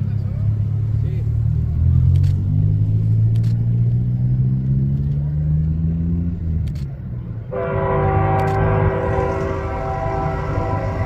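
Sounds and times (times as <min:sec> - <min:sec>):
low engine drone: 0:06.7 - 0:11.0
locomotive air horn chord: 0:07.5 - 0:11.0.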